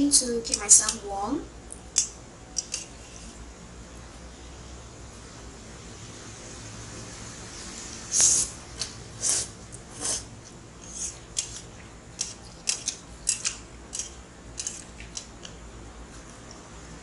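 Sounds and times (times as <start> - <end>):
noodle slurping: 9.2 - 11.2.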